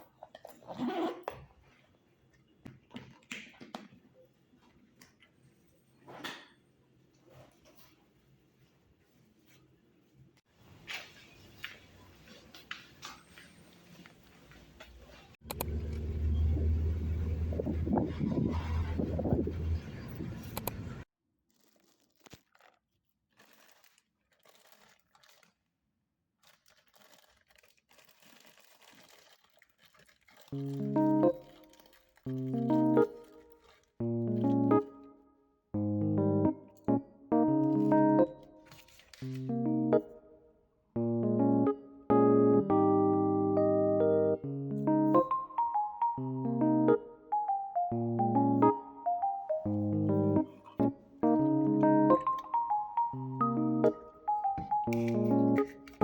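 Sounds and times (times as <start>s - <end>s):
faint rustling and crinkling: 7.0s - 15.4s, 21.4s - 25.7s, 26.4s - 34.6s, 37.8s - 39.5s.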